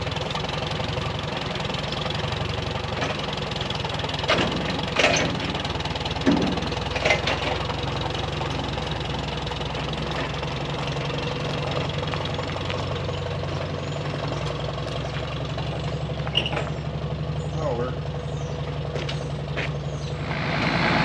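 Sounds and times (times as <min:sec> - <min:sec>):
farm engine idling: 0:00.0 - 0:21.0.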